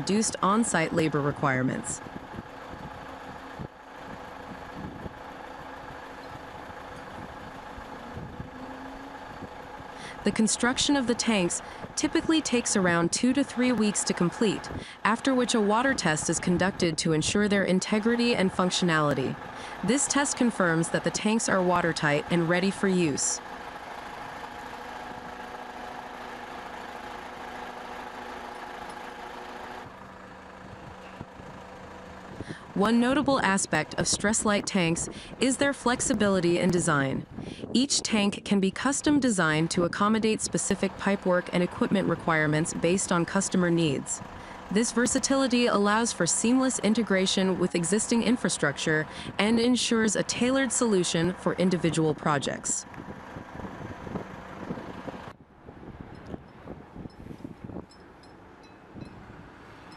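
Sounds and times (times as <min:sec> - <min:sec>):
machine humming: 0:00.0 - 0:37.6
engine idling: 0:00.0 - 0:37.7, 0:38.8 - 0:55.3.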